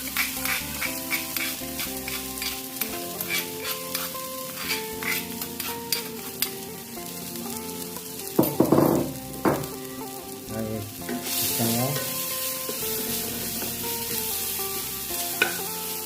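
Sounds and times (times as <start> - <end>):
stirring utensil clicking and scraping: 0.0 - 6.6
food sizzling in hot oil: 0.0 - 16.0
instrumental background music: 0.0 - 16.0.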